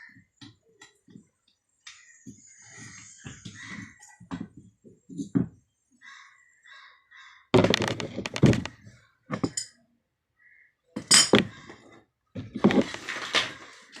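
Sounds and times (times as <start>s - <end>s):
metal tap parts and tools clattering: 9.3s - 9.7s, 11.0s - 11.5s.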